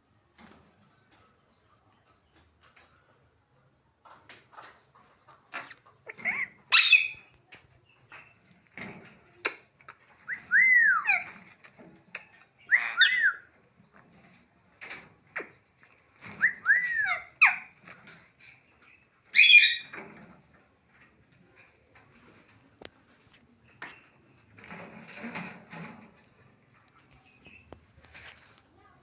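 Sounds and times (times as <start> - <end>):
parrot screeching: 6.1 - 7.2, 12.7 - 13.4, 19.4 - 19.9
parrot whistling: 12.7 - 13.4, 16.4 - 17.6.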